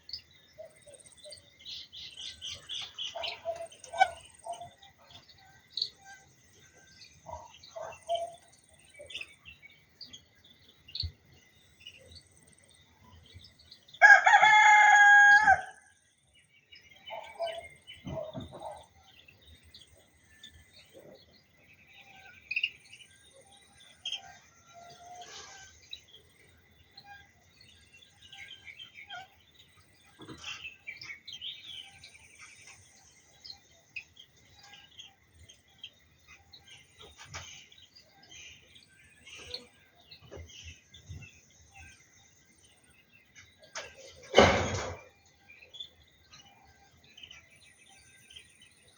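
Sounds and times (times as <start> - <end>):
small birds chirping: 0.0 - 48.9
rooster crowing: 14.0 - 15.9.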